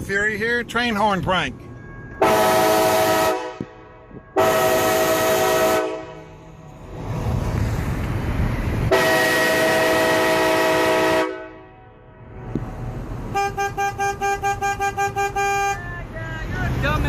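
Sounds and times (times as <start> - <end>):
vehicle road rumble: 0.0 - 17.0
train horn chord blast: 2.2 - 6.4, 8.9 - 12.2
short horn toots: 13.3 - 15.8.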